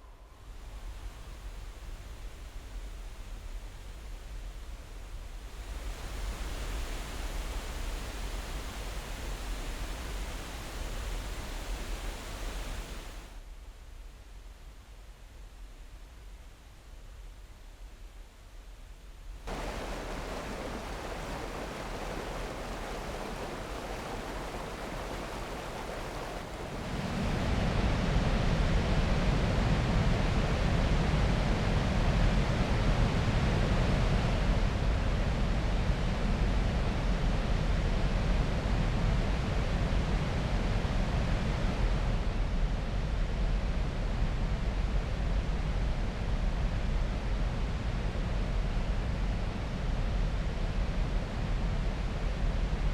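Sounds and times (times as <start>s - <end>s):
water rushing: 5.6s - 13.2s, 19.5s - 27.5s.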